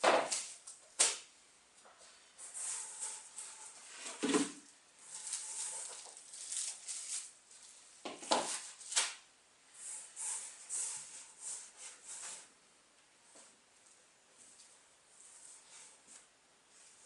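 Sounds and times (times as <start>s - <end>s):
packaging rustling and scraping: 2.4s - 9.2s.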